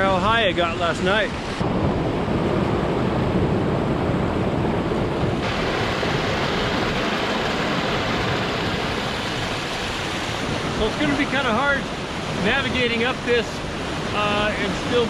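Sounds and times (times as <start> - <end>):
floodwater rushing: 5.3 - 15.0.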